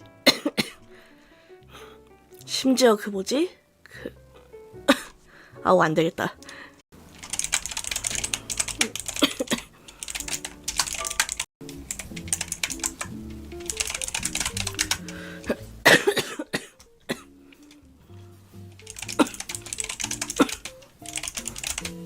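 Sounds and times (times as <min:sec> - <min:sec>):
quiet background music: 0:00.0 - 0:22.0
loud cough: 0:00.2 - 0:00.8, 0:09.2 - 0:09.7, 0:15.5 - 0:17.2
computer keyboard typing: 0:07.1 - 0:15.2, 0:18.7 - 0:22.0.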